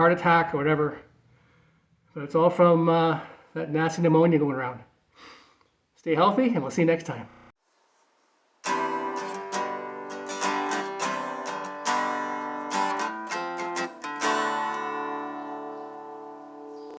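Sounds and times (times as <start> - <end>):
acoustic guitar strummed chords: 8.6 - 17.0.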